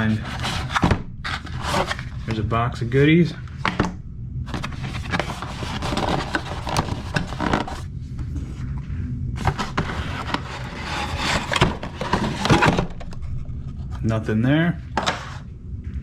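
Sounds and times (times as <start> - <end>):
packaging rustling and scraping: 0.0 - 2.4, 4.5 - 8.8, 9.4 - 14.0, 15.0 - 15.4.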